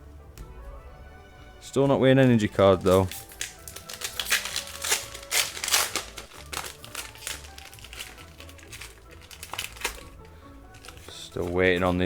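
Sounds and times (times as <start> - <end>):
background music: 0.0 - 12.0
cards being flicked through: 2.2 - 12.0
foil wrapper crinkling: 2.4 - 12.0.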